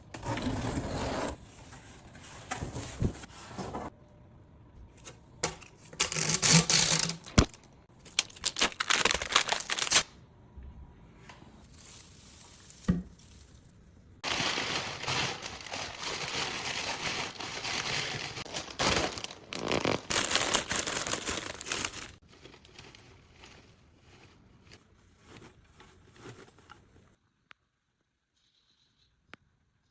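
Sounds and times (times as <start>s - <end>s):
packaging tearing and crinkling: 6.0s - 10.1s, 14.2s - 26.6s.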